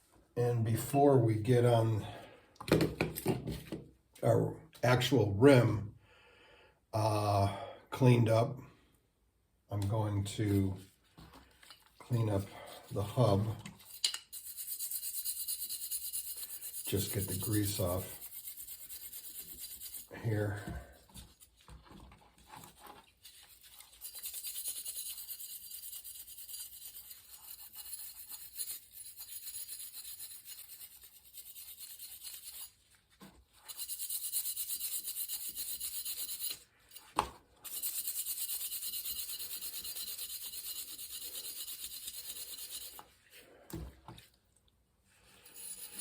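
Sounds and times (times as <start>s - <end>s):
rhythmic rubbing strokes: 12.2s - 20.5s, 23.2s - 32.8s, 33.6s - 36.6s, 37.6s - 43.0s, 45.4s - 46.0s.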